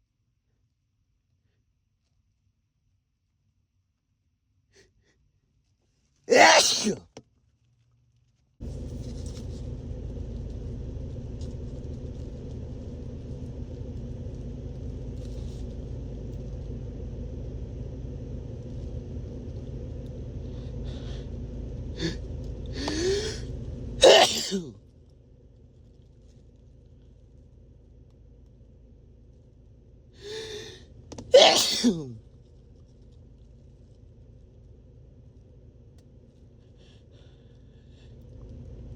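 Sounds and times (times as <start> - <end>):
man sneezing: 6.3 - 7.0, 22.0 - 22.2, 22.8 - 23.4, 24.0 - 24.8, 30.2 - 32.2
steady low rumble: 8.6 - 38.9
intake of breath: 22.8 - 23.4, 30.2 - 30.8.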